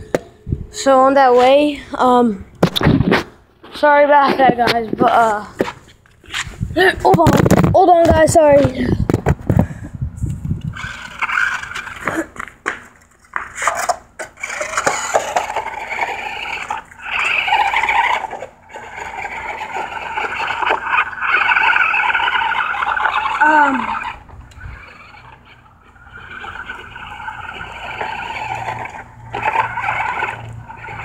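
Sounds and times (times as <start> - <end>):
small electric motor whirring: 10.2 - 12.1, 13.6 - 31.0
scraping and clicking on gravel: 10.7 - 23.3.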